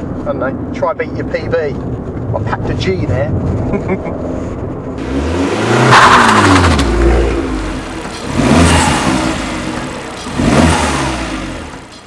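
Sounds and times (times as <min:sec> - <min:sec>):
car engine accelerating hard: 0:05.0 - 0:12.0.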